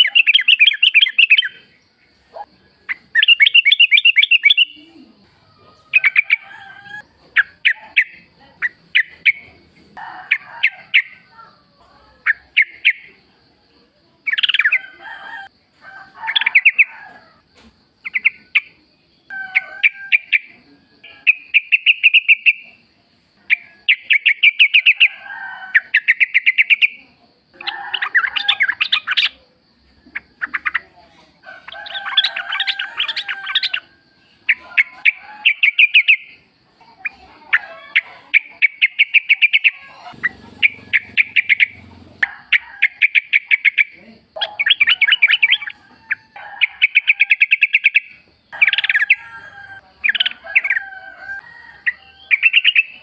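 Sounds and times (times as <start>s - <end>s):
bulbuls bubbling chatter: 26.6s - 47.0s.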